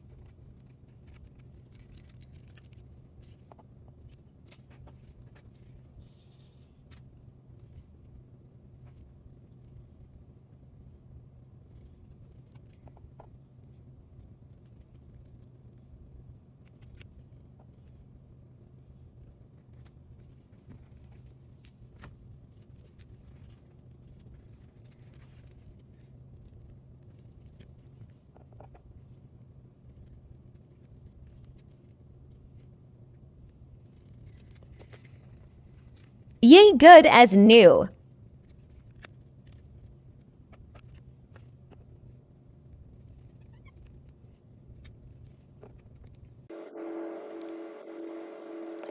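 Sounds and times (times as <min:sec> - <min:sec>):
low hum: 0:46.5 - 0:48.9.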